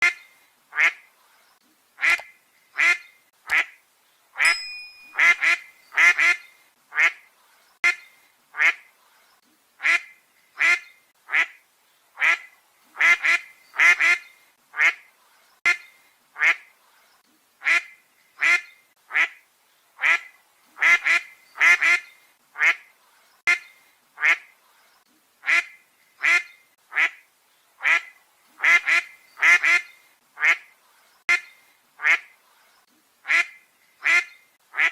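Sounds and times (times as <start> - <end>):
duck quacking: 0.8 - 1.0, 2.0 - 3.8, 5.2 - 7.2, 7.8 - 8.9, 9.8 - 11.6, 12.2 - 15.0, 15.6 - 16.7, 20.0 - 22.9, 23.5 - 24.5, 25.4 - 27.2, 27.8 - 30.7, 31.3 - 32.3, 33.2 - 34.9.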